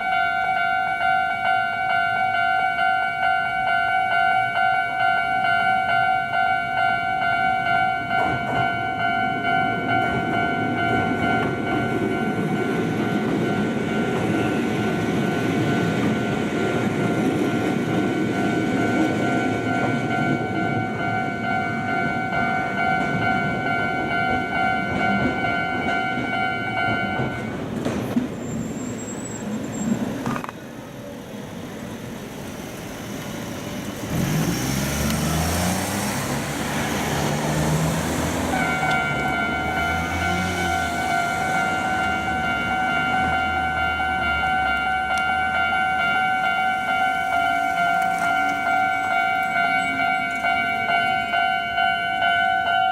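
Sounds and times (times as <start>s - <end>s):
road traffic passing: 0.2s - 52.9s
train wheels rumbling on rails: 1.4s - 52.9s
vehicle engine pulling away: 32.6s - 41.6s
level crossing alarm tones: 38.3s - 52.9s.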